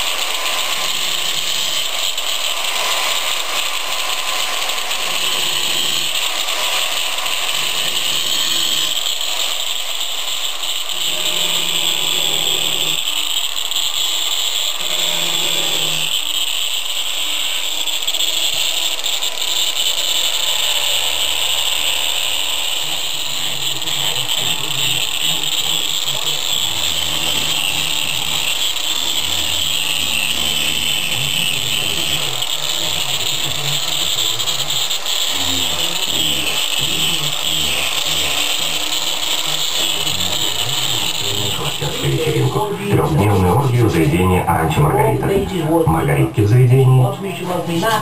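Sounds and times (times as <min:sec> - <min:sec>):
power tool running: 0:00.0 - 0:48.0.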